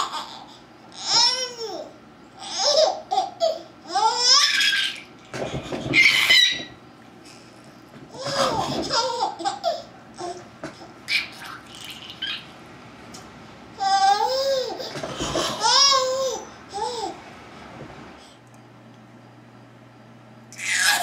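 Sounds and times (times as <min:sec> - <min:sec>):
baby girl laughing: 0:00.0 - 0:06.7, 0:08.1 - 0:12.5, 0:13.8 - 0:17.2.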